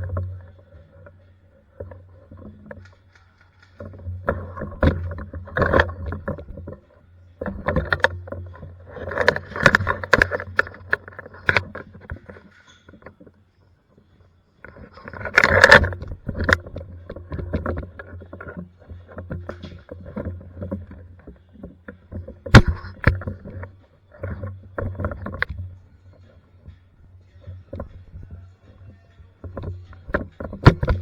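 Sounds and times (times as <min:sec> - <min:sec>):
knocks and clicks: 0:22.1 - 0:25.7, 0:29.4 - 0:31.0.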